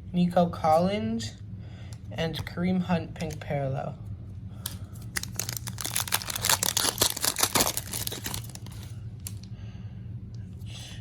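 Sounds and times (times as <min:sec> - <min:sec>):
foil card pack crinkling: 0:04.6 - 0:09.4.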